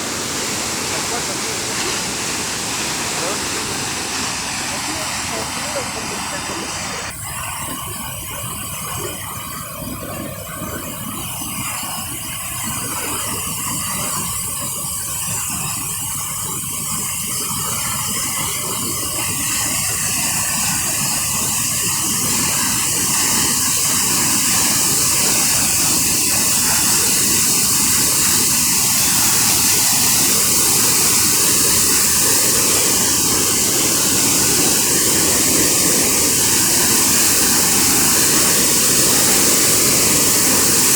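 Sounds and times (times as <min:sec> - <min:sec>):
waterfall rushing: 0:00.0 - 0:08.9, 0:19.8 - 0:40.9.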